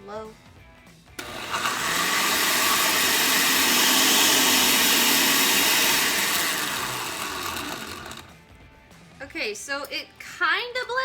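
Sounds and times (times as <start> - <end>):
blender chopping vegetables: 1.2 - 8.4.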